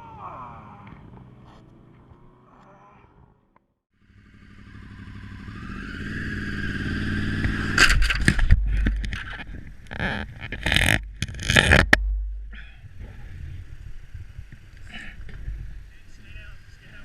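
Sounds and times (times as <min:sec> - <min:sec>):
motorcycle engine accelerating: 0:00.5 - 0:02.5, 0:04.0 - 0:12.4.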